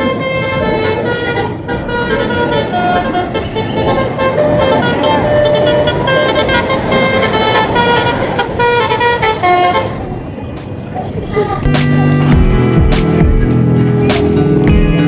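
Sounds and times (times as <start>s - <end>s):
bus musical horn tune: 0.0s - 10.6s
engine noise: 0.0s - 15.0s
traffic noise: 0.0s - 15.0s.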